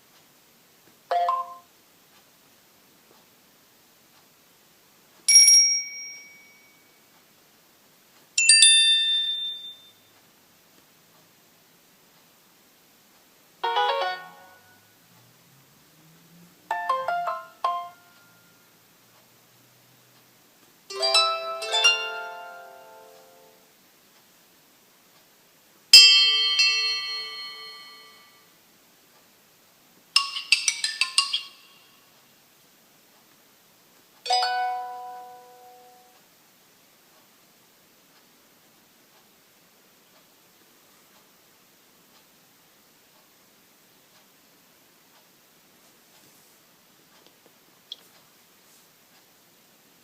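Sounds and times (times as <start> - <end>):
bell chime ringtone: 1.1 - 1.6, 5.3 - 7.0, 8.4 - 10.1, 16.7 - 18.5, 20.9 - 23.5, 26.0 - 28.4, 30.2 - 32.0, 34.3 - 36.1
bright ringing tone: 5.3 - 7.1, 8.4 - 10.1, 26.0 - 28.5.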